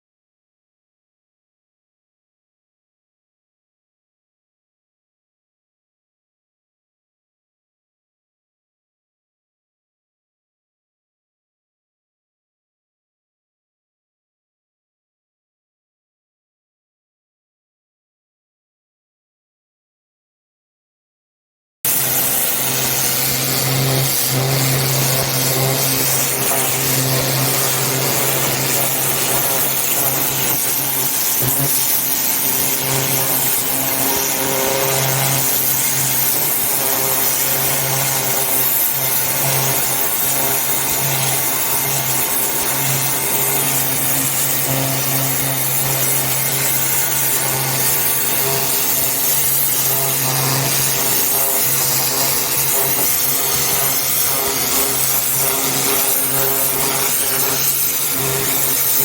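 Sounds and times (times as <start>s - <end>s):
high-pressure water hissing: 21.9s - 59.0s
pressure washer machine hum: 21.9s - 59.0s.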